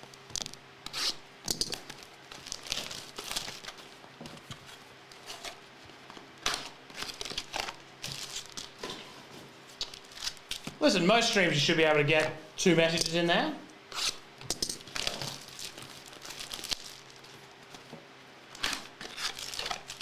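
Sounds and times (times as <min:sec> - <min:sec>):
packaging tearing: 0:06.5 - 0:08.8, 0:09.8 - 0:10.8, 0:14.8 - 0:17.4, 0:18.5 - 0:20.0
packaging crinkling: 0:06.5 - 0:08.9, 0:09.8 - 0:10.8, 0:14.8 - 0:17.8, 0:18.5 - 0:20.0.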